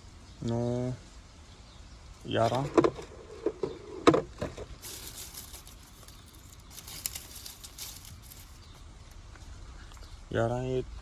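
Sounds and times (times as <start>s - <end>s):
nest rustling: 4.7s - 8.8s.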